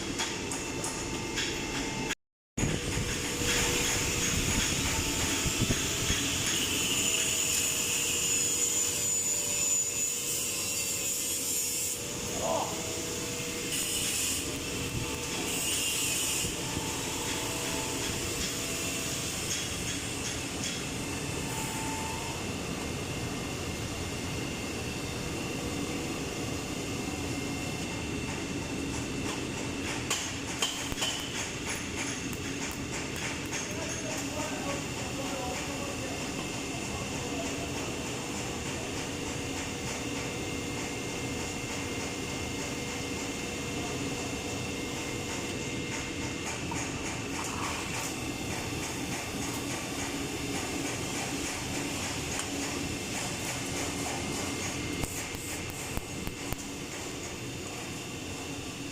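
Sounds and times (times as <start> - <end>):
hissing workshop machine: 0.0 - 58.9
machinery low hum: 11.8 - 30.6.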